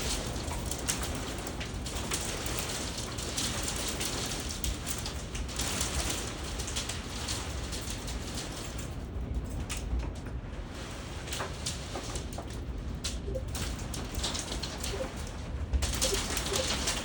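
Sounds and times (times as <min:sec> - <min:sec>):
hailstones ticking: 0:15.9 - 0:17.0.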